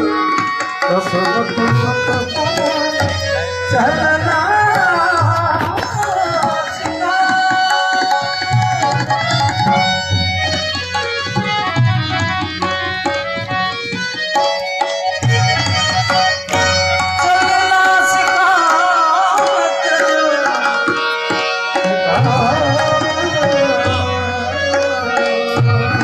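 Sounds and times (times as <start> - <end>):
hand drum rhythm: 0.0 - 18.9
sustained melodic instrument: 0.0 - 26.0.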